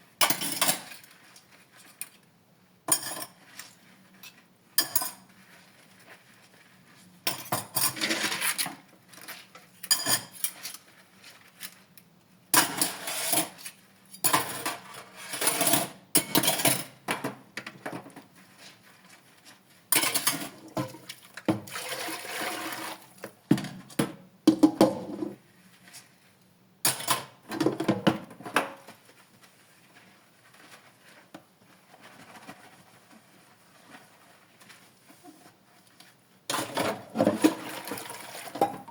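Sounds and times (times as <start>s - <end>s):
dishes and cutlery clattering: 0.2s - 1.0s, 2.9s - 3.4s, 4.8s - 5.2s, 9.8s - 10.7s, 14.2s - 17.4s, 20.0s - 21.0s, 26.9s - 28.1s.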